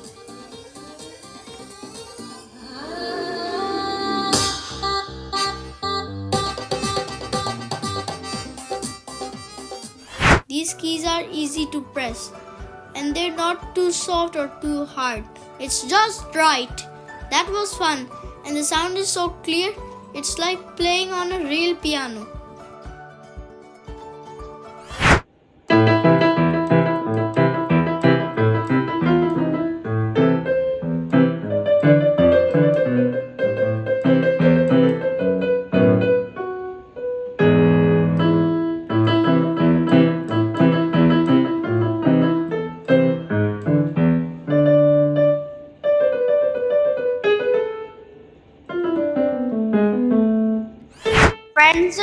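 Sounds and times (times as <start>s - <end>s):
keyboard piano melody: 25.7s - 50.8s.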